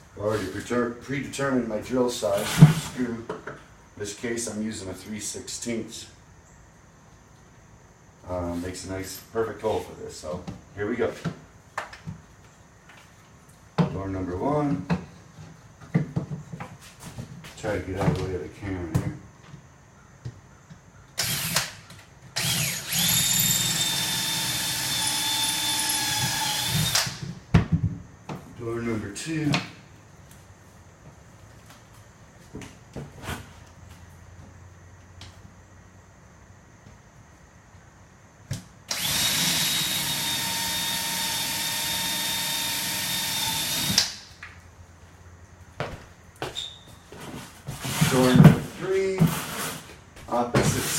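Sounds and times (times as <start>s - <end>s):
electric drill whining: 21.2s - 21.8s, 22.4s - 27.2s, 38.9s - 44.1s.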